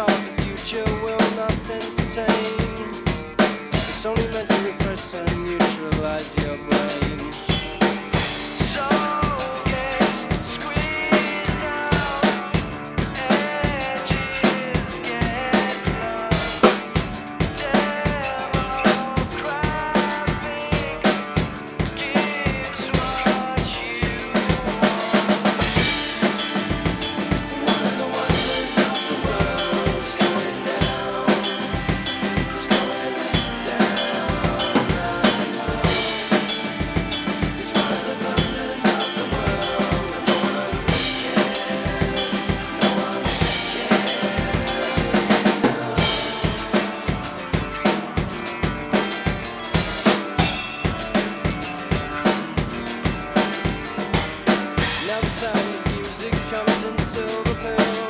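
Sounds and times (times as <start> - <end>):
recorded band backing track: 0.0 - 58.0
rock drum kit played hard: 0.0 - 58.0
cymbal and rimshot hits: 25.2 - 47.3.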